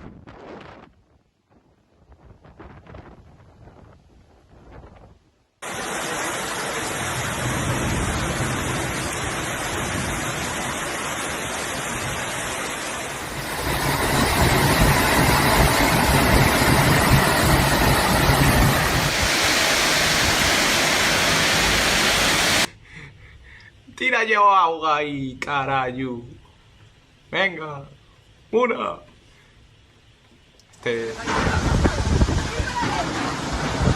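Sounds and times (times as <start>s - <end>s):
wind buffeting microphone: 0.0s - 5.3s, 13.2s - 20.8s, 31.2s - 33.9s
storm wind: 0.0s - 22.7s, 31.1s - 33.9s
heavy rain: 5.6s - 22.7s, 30.9s - 33.9s.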